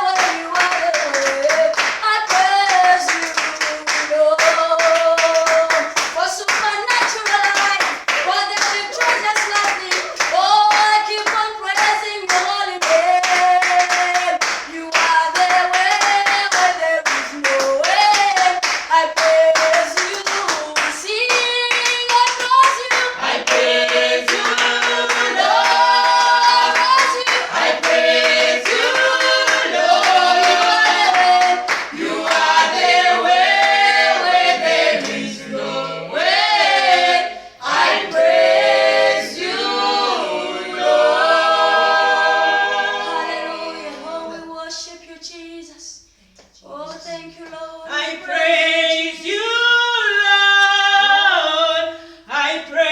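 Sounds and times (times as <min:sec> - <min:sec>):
rhythmic hand clapping: 0:00.0 - 0:43.7
choir singing gospel in harmony: 0:22.8 - 0:44.8, 0:47.8 - 0:52.9.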